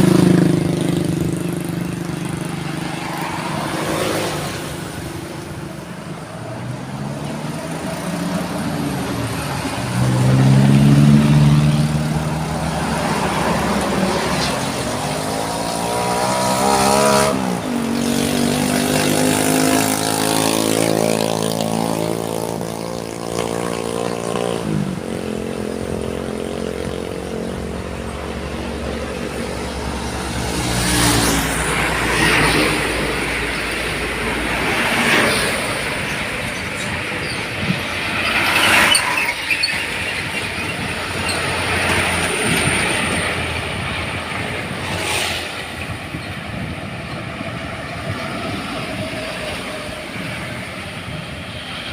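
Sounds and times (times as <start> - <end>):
vehicle engines accelerating past: 6.8 - 47.0.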